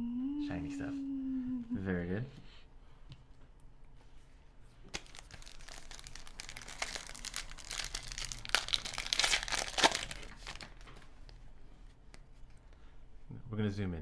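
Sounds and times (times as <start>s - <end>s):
plastic wrapper crinkling and tearing: 4.9s - 11.4s.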